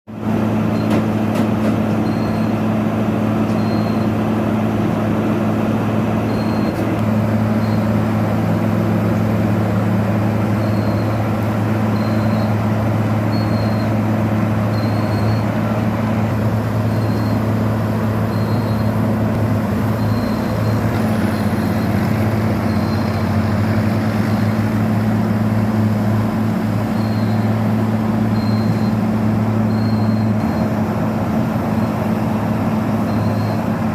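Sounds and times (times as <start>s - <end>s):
diesel engine drone: 0.1s - 33.9s
short high beeps: 3.5s - 4.1s, 11.9s - 12.6s, 13.3s - 13.9s, 18.3s - 19.0s, 20.0s - 22.0s, 28.4s - 29.0s, 29.7s - 30.7s.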